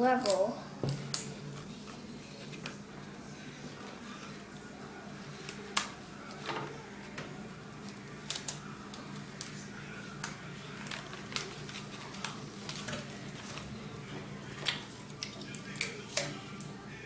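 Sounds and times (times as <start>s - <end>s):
paper and tape crinkling: 7.8s - 13.7s.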